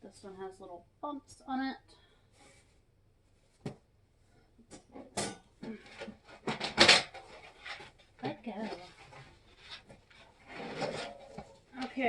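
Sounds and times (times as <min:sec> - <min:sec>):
cardboard scraping against metal: 0:06.4 - 0:11.6.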